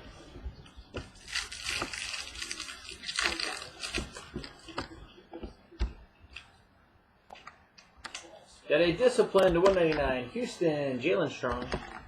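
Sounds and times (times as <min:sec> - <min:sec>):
cards rustling: 0:01.0 - 0:05.6
cards tapping and clicking: 0:09.3 - 0:10.2.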